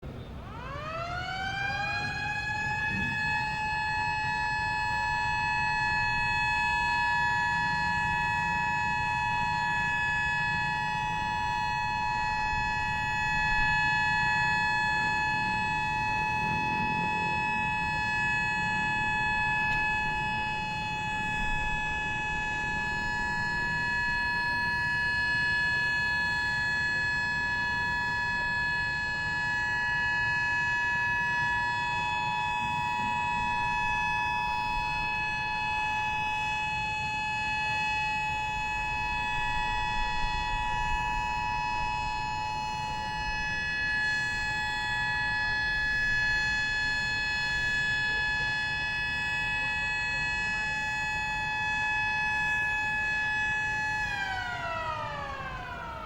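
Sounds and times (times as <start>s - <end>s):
civil defence siren steady tone: 0.0s - 56.0s.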